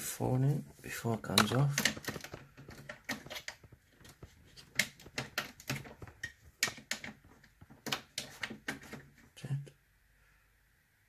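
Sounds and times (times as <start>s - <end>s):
clicks of handling small objects: 1.3s - 9.1s.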